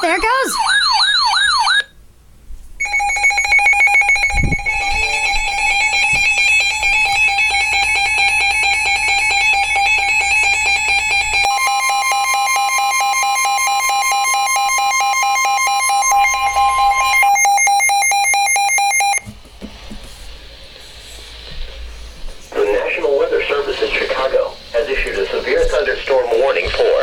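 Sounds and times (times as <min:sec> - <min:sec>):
steady electronic alert tone: 0:02.8 - 0:19.2
two alert tones together: 0:11.4 - 0:19.2.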